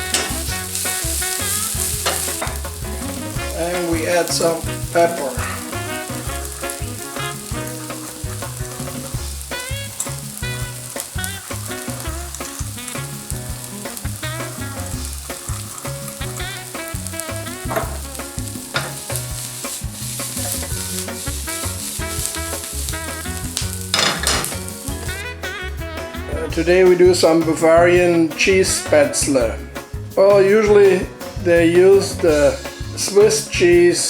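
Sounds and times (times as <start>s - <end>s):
onions sizzling in a pan: 0.0s - 25.3s
stirring in a pan: 0.0s - 25.3s
background music: 0.0s - 34.0s.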